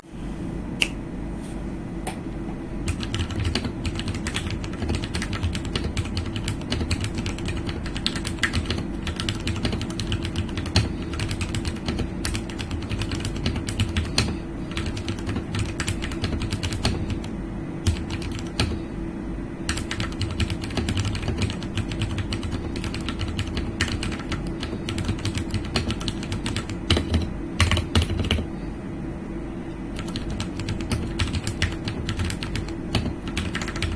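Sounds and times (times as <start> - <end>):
mechanical keyboard typing: 2.9 - 18.8, 19.7 - 28.5, 30.0 - 33.9.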